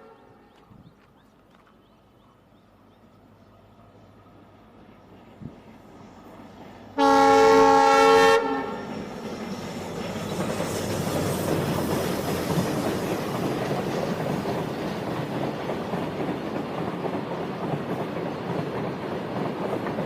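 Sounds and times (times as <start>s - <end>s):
locomotive horn blast: 7.0s - 8.9s
freight train wheels clattering: 8.9s - 20.0s.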